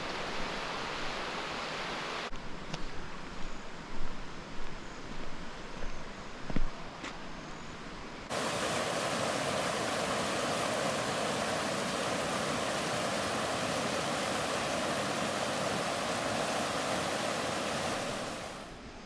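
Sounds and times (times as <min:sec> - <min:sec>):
river rapids rushing: 0:08.3 - 0:18.8.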